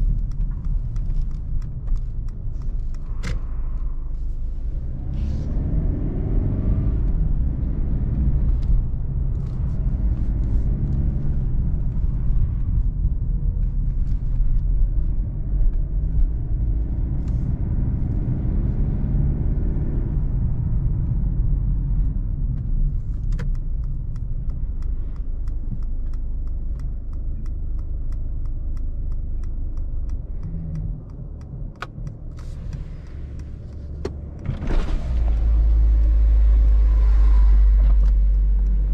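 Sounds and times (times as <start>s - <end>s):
regular light ticking: 0.0s - 4.1s, 22.5s - 34.5s
road and wind noise: 0.0s - 38.9s
diesel engine revving: 4.7s - 13.0s, 23.8s - 38.9s.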